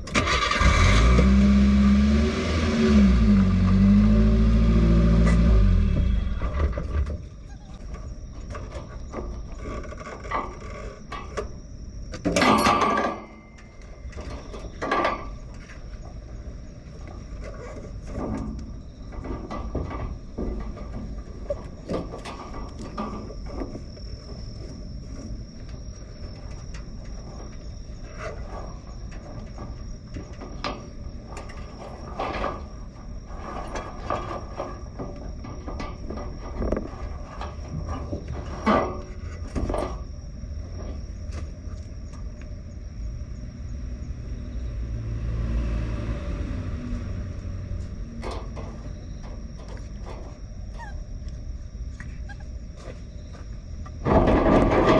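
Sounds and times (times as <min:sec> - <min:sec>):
knocks and rattles: 0:05.8 - 0:41.8, 0:47.2 - 0:50.6, 0:52.8 - 0:54.9.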